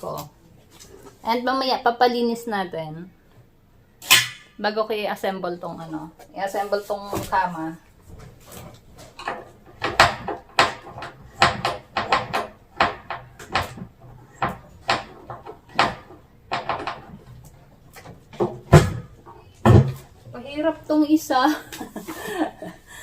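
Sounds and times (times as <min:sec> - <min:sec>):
knocks and clicks of bed frame parts: 0:08.1 - 0:20.2
heavy thump: 0:18.3 - 0:20.1.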